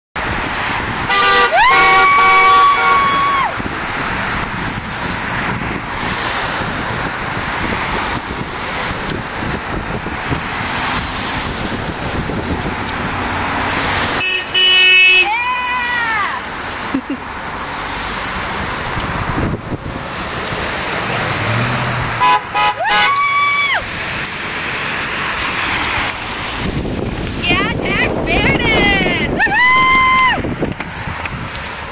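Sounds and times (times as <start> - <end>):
road noise: 0.2 - 31.9
vehicle horn honking: 1.1 - 3.2, 14.2 - 15.3, 22.2 - 23.2.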